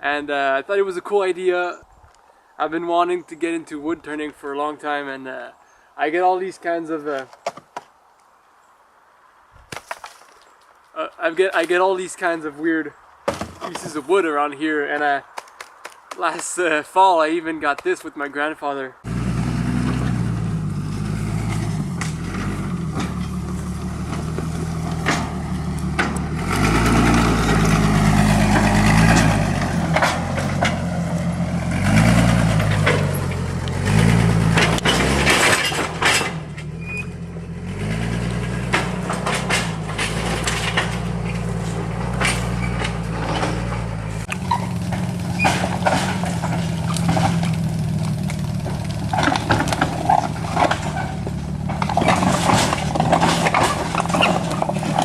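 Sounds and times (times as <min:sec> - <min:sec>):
sharp cracks and knocks: 0:07.1 - 0:07.9, 0:09.6 - 0:11.9, 0:13.2 - 0:14.0, 0:15.0 - 0:16.6, 0:21.4 - 0:36.8, 0:37.8 - 0:55.0
tractor engine revving: 0:19.0 - 0:55.0.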